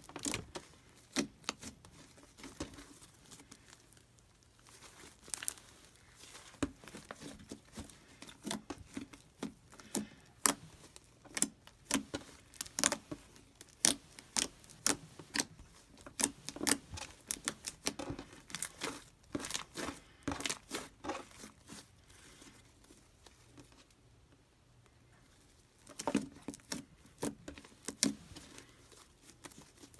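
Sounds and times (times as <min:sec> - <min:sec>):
slime popping and crackling: 0:00.0 - 0:21.8.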